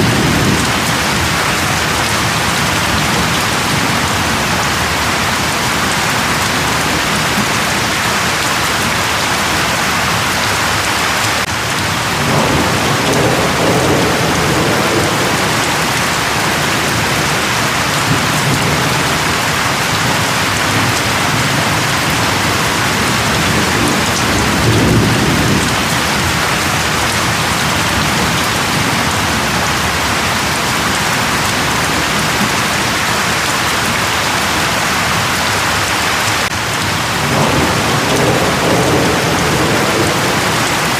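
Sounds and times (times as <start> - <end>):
dense rainfall: 0.0 - 40.9
low thunder rolling: 11.4 - 32.6, 36.6 - 40.9.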